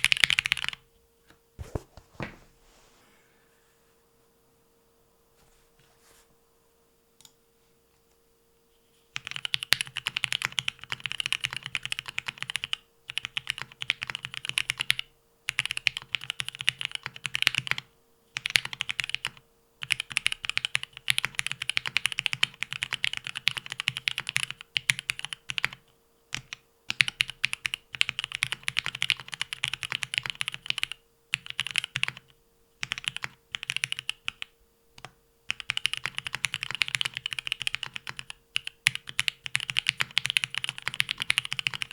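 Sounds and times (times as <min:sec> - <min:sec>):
mechanical keyboard typing: 0:09.2 - 0:17.8, 0:18.4 - 0:25.8, 0:26.4 - 0:41.9.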